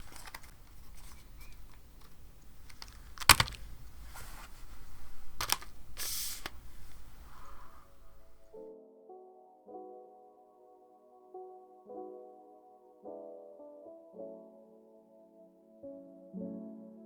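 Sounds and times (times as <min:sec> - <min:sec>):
mechanical keyboard keystroke clacks: 0:00.0 - 0:04.0, 0:05.2 - 0:06.6.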